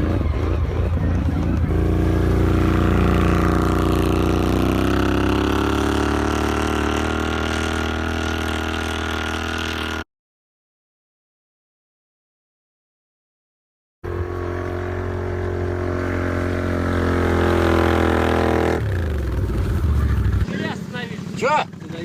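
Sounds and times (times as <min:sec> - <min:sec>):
vehicle engine running under load: 0:00.0 - 0:10.0, 0:14.0 - 0:22.0.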